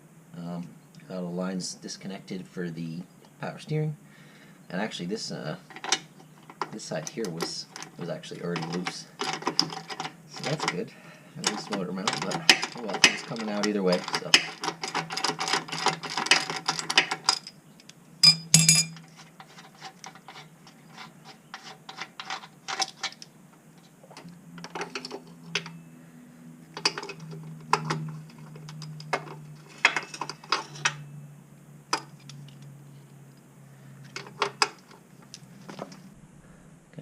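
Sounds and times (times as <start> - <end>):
faint low hum: 0.0 - 37.0
metallic clinks of wrenches: 18.2 - 19.2.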